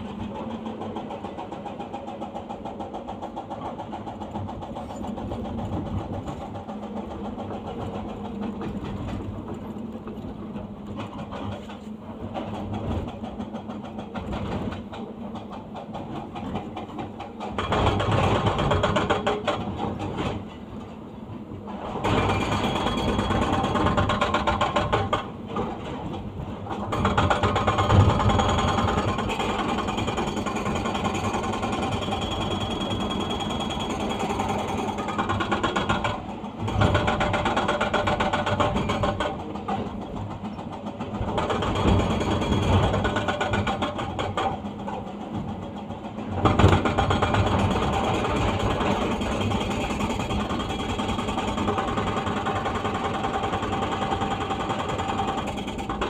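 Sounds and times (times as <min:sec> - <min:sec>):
excavator engine: 0:00.0 - 0:56.0.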